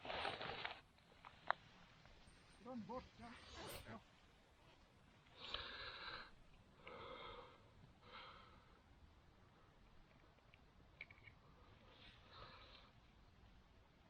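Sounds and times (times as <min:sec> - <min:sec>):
breathy puffs of breath: 0:05.3 - 0:08.9.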